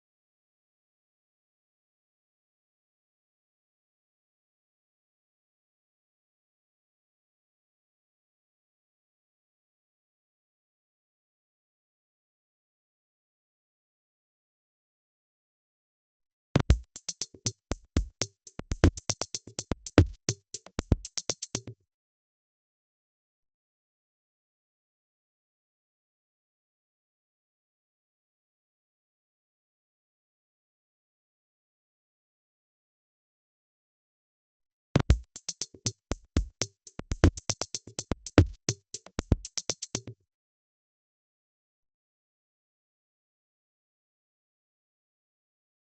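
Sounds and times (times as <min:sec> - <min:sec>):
drum machine rock beat: 0:16.7 - 0:21.6, 0:35.1 - 0:40.0
hi-hat hits: 0:16.7 - 0:21.6, 0:35.1 - 0:40.0.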